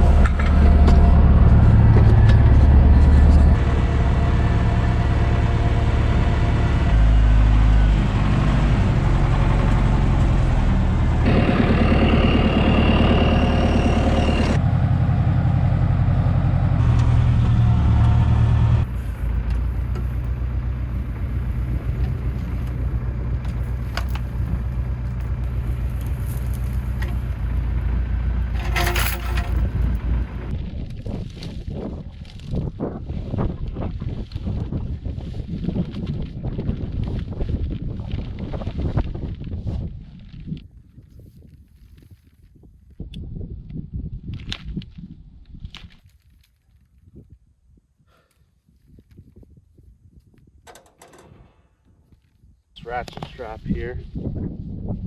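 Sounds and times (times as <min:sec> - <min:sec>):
engine running: 0:00.0 - 0:30.5.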